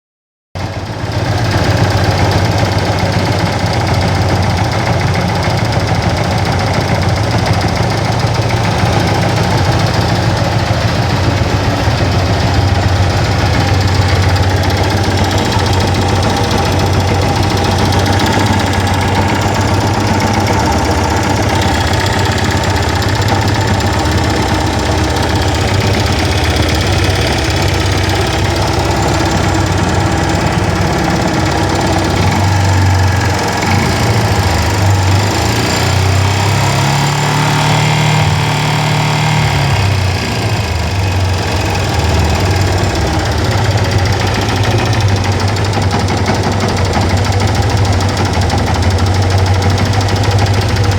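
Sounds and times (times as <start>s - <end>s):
motorcycle engine running: 0.6s - 50.9s.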